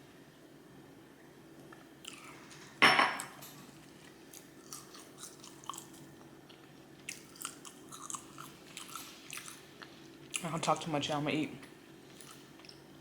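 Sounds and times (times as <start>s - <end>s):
crunching and chewing: 2.0s - 2.6s, 3.2s - 10.6s, 12.1s - 12.9s.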